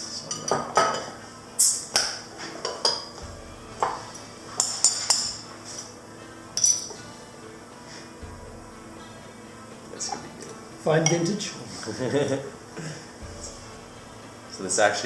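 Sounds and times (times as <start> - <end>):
bottle opener clinking on cap: 0.3 - 3.1, 6.6 - 7.0.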